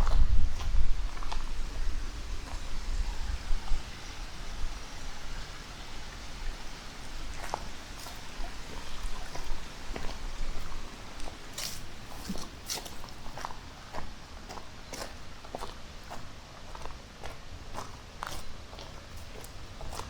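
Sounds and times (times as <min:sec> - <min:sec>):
faint footsteps on trail: 0:00.0 - 0:20.0
stream rushing: 0:00.6 - 0:14.4.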